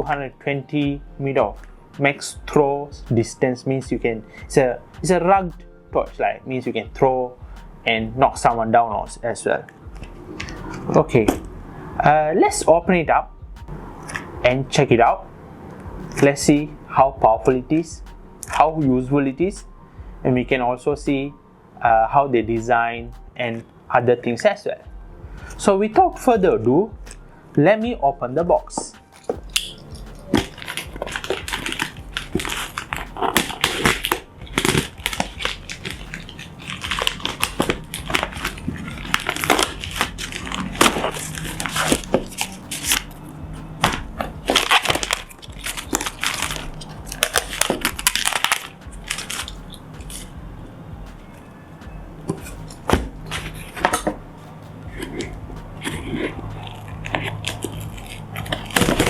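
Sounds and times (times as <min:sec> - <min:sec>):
cardboard packaging rustling and tearing: 0:29.2 - 0:50.4, 0:52.3 - 0:54.2, 0:55.0 - 0:59.0.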